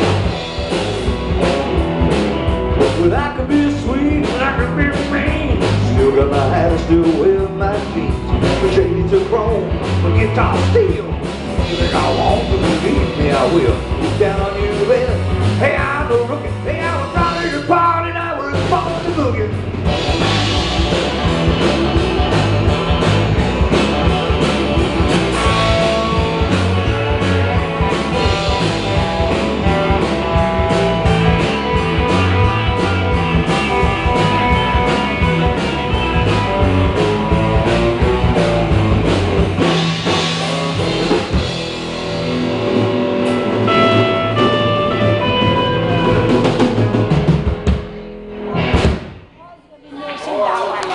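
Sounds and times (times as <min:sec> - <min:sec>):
rock band playing instrumental: 0:00.0 - 0:49.4.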